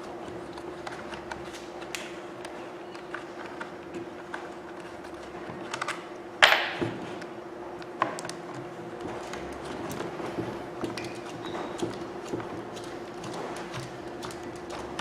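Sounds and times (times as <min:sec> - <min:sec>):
faint steady hum: 0:00.0 - 0:15.0
tools clicking and tapping: 0:07.8 - 0:15.0.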